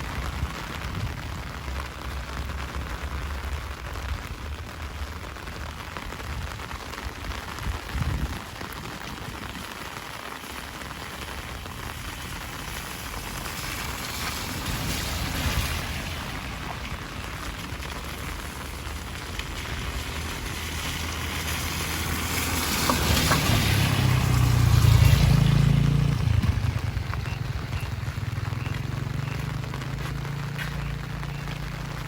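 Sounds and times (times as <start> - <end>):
heavy rain: 0.0 - 32.0.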